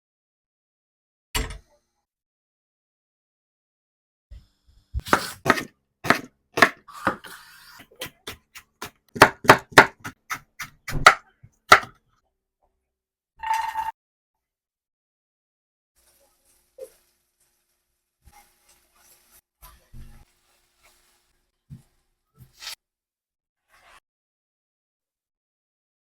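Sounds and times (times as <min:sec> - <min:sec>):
knife chopping vegetables: 0:05.0 - 0:11.9.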